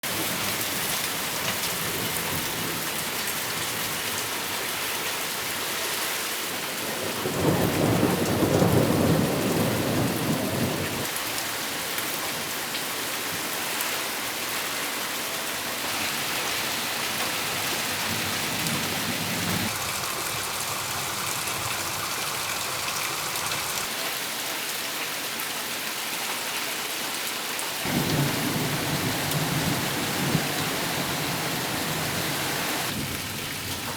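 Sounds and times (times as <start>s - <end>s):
steady rain hiss: 6.4s - 25.6s, 27.3s - 33.9s.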